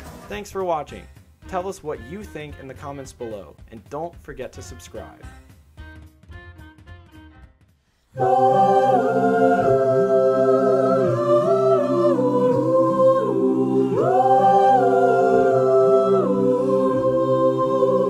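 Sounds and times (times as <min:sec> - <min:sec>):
voices singing a cappella: 0:08.1 - 0:18.0.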